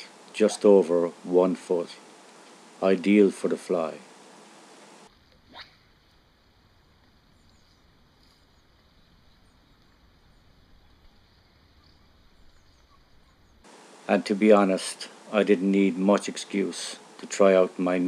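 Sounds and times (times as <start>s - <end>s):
faint high bird chirps: 7.3s - 13.6s.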